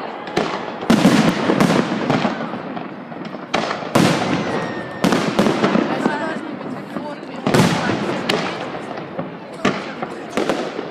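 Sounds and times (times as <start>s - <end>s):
fireworks bangs with echo: 0.0s - 10.9s.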